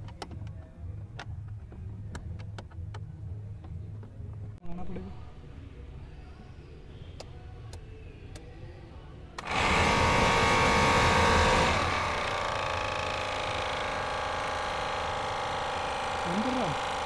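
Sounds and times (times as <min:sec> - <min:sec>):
blower fan motor whining: 0:09.3 - 0:17.0.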